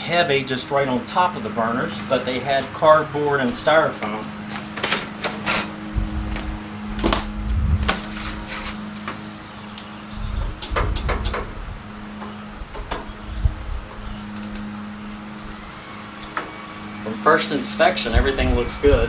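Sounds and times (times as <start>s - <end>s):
steady low hum: 0.0s - 19.0s
packing material scraping and knocking: 4.5s - 5.8s.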